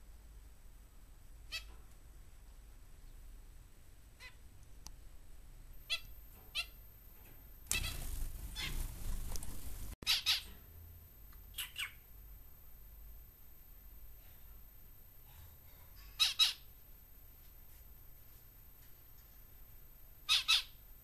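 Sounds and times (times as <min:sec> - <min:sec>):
cage birds squawking: 0:04.2 - 0:04.5, 0:05.8 - 0:06.8, 0:07.7 - 0:10.6, 0:11.5 - 0:12.0, 0:16.0 - 0:16.7, 0:20.2 - 0:20.8
noisy rustling: 0:04.7 - 0:11.3.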